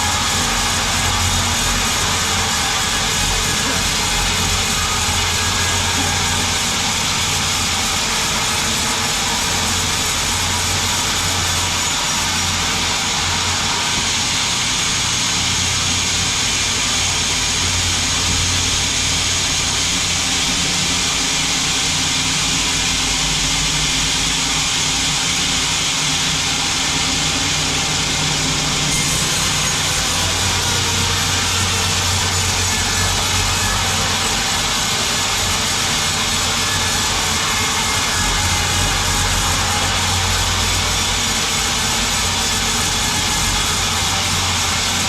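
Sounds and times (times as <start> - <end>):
sawmill machinery running: 0.0 - 45.0.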